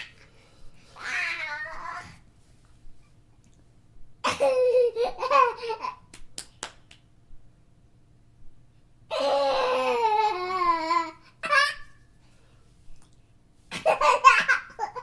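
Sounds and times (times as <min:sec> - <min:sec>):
child laughing: 0:04.3 - 0:06.1, 0:13.8 - 0:15.0.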